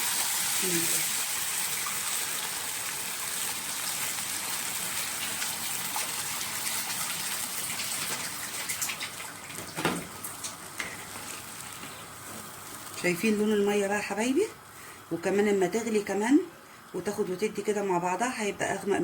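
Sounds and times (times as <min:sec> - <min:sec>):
water hissing into hot pot: 0:00.0 - 0:09.2
rice crackling in pot: 0:07.8 - 0:14.2.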